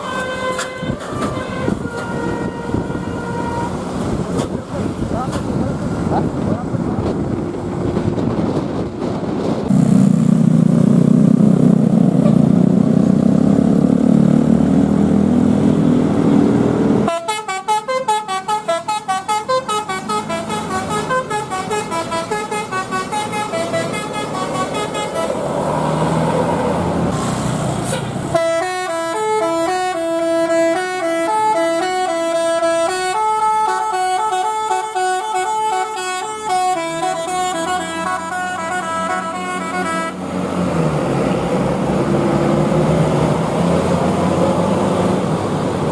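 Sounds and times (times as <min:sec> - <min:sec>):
multi-tone bus horn melody: 0:00.0 - 0:04.9, 0:12.2 - 0:12.5, 0:17.0 - 0:25.6, 0:27.8 - 0:40.4
loud low drone: 0:09.7 - 0:17.1.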